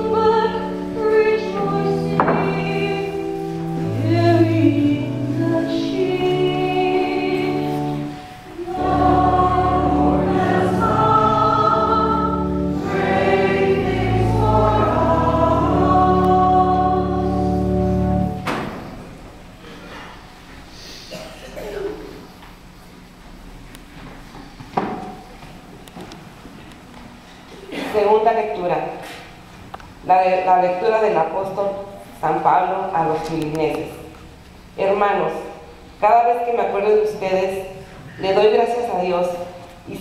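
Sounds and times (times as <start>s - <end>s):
church choir singing a hymn: 0.0s - 18.4s.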